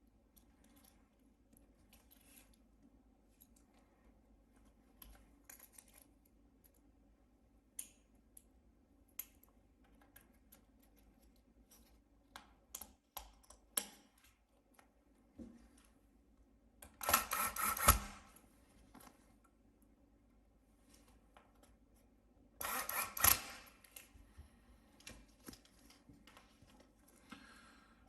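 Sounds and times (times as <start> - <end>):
clicks and taps of small components: 7.7 - 15.0.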